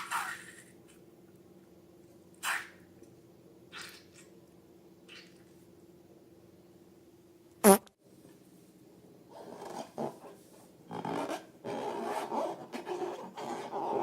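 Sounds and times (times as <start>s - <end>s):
fart-like sound: 7.6s - 7.9s.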